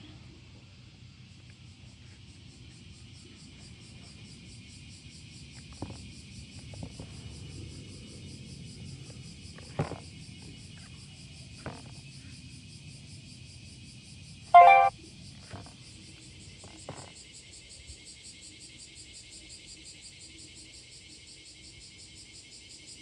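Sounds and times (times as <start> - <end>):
short loud ringing tone: 14.6 - 14.9.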